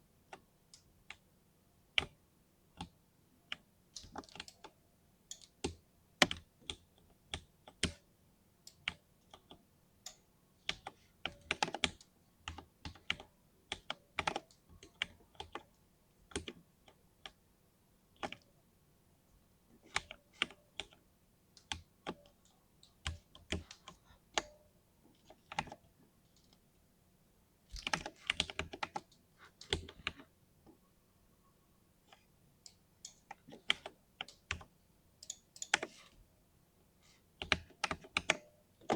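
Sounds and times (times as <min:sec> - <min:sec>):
mechanical keyboard typing: 0:10.7 - 0:15.6, 0:27.7 - 0:30.2, 0:33.0 - 0:36.1, 0:37.4 - 0:38.9.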